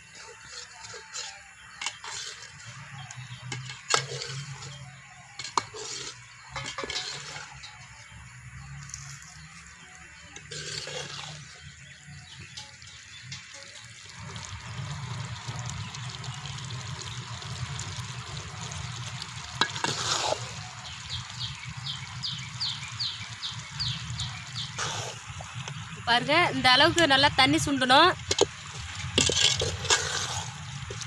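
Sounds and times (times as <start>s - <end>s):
stirring scrapes: 0.0s - 4.8s, 5.4s - 7.7s, 10.4s - 13.9s, 19.6s - 21.0s, 24.6s - 25.4s, 28.2s - 31.0s
gravy simmering and sizzling: 0.0s - 31.0s.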